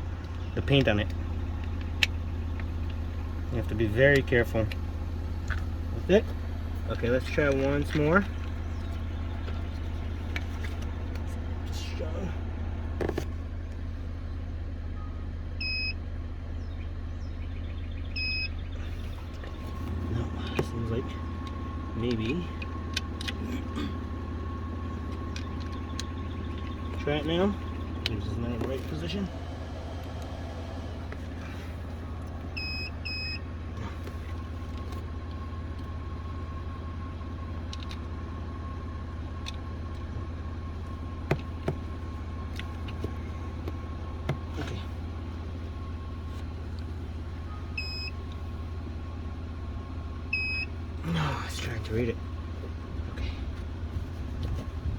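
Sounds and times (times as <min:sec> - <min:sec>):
steady low hum: 0:00.0 - 0:54.9
vehicle idling: 0:00.0 - 0:54.9
short electronic beeps: 0:32.6 - 0:33.4.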